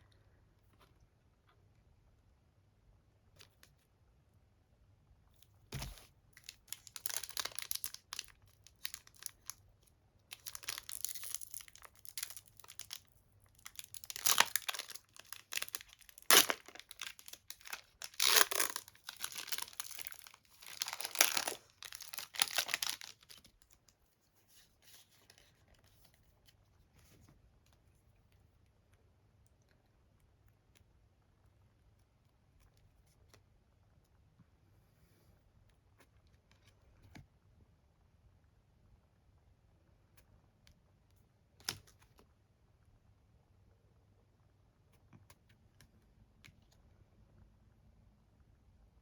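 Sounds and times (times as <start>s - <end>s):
wrapping torn and crinkled: 5.8s - 9.6s, 10.3s - 23.8s.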